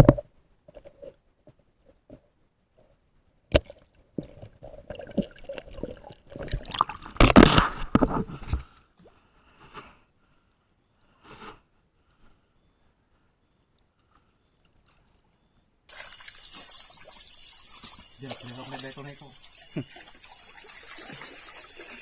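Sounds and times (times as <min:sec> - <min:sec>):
water sloshing and gurgling: 0:03.5 - 0:09.2, 0:15.9 - 0:22.0.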